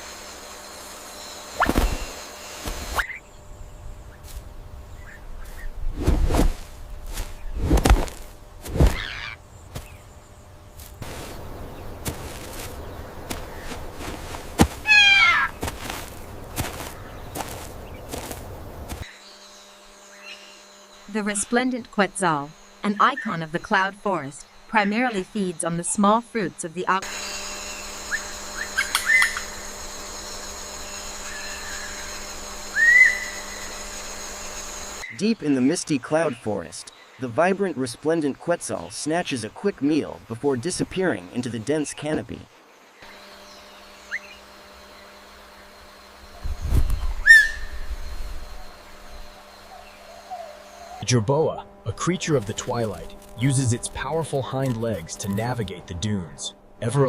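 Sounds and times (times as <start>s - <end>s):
steady background hum: 0.0s - 57.0s
dull thumps: 6.0s - 10.0s, 10.8s - 19.0s
high wavering animal call: 14.8s - 15.6s, 32.7s - 33.8s, 46.4s - 47.9s
bird whistled calls: 28.0s - 29.5s, 32.7s - 33.7s, 47.0s - 47.9s.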